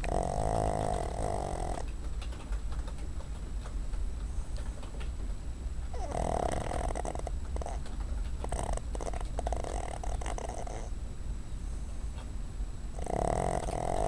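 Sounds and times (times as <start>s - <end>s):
dog snoring: 0.0s - 1.9s, 5.9s - 11.0s, 12.9s - 14.0s.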